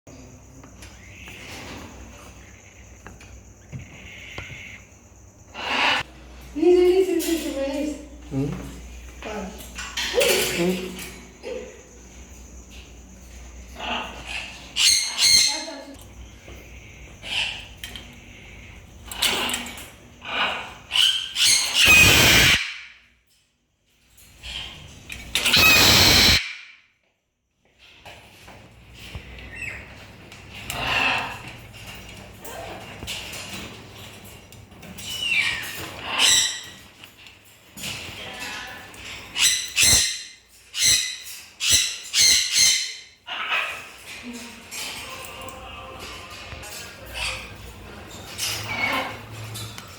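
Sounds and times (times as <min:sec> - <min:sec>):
parrots screeching: 0:05.5 - 0:06.2, 0:13.2 - 0:15.9, 0:16.5 - 0:23.2, 0:24.4 - 0:26.9, 0:29.5 - 0:33.4, 0:34.9 - 0:36.9, 0:37.8 - 0:49.8.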